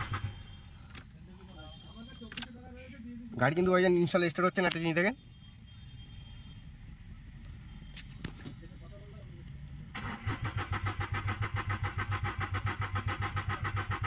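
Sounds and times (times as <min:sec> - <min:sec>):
engine cranking without starting: 0:00.0 - 0:00.5, 0:10.0 - 0:14.0.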